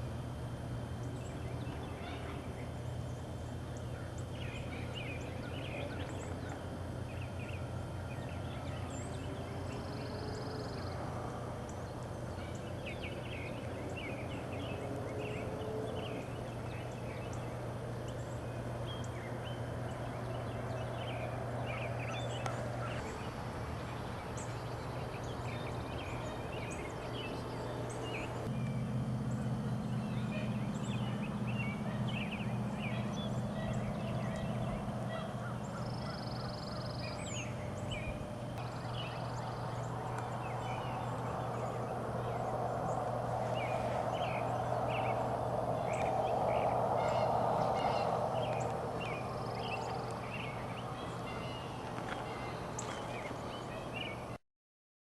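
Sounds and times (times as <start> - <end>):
birds chirping: 0.0 - 54.4
steady low hum: 0.0 - 54.4.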